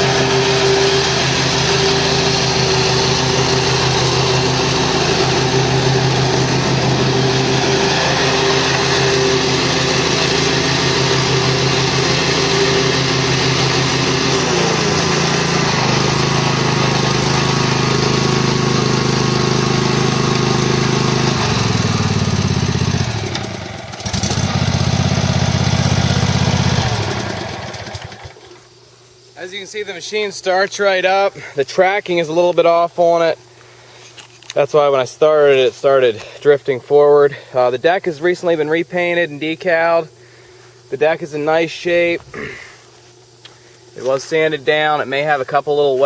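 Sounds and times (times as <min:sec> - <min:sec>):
mower engine running: 0:00.0 - 0:28.7.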